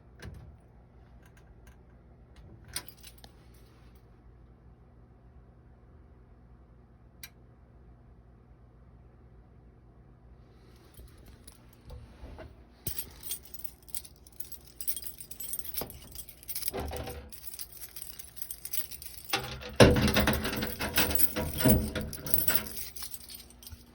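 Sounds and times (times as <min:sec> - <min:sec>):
clinking and rattling: 0:12.8 - 0:23.9.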